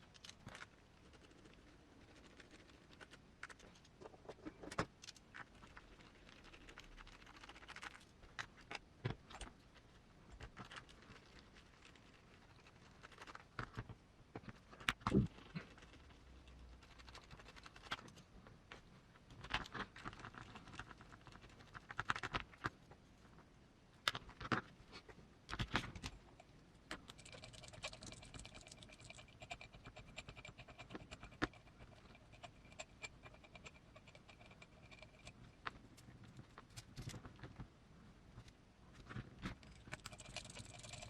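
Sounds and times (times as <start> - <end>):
small parts clicking and scraping: 25.5 - 37.3, 39.0 - 41.0.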